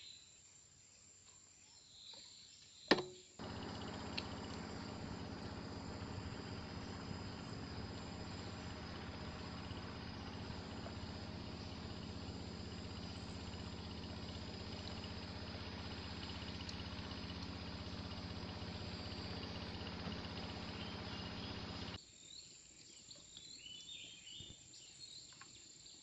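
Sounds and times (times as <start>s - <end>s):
low steady hum: 3.4s - 22.0s
insects trilling: 3.4s - 22.6s.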